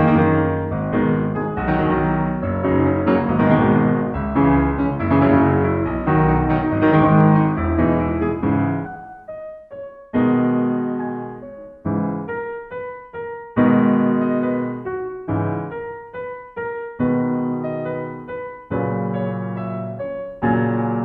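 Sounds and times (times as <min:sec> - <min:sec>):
piano music: 0:00.0 - 0:21.0.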